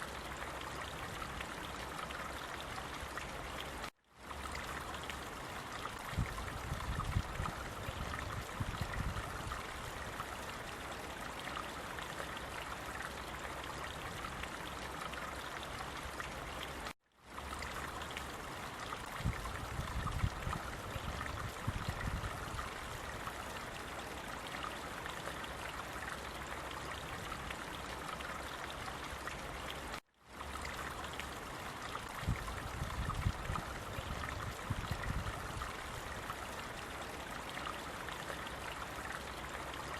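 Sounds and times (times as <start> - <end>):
low water gurgles: 0.0 - 39.9
stream water rushing: 0.0 - 39.9.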